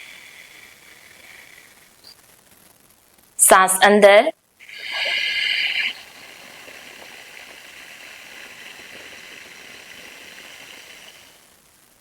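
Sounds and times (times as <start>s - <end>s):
soft breath hiss through throat: 0.0s - 2.3s, 4.6s - 11.6s.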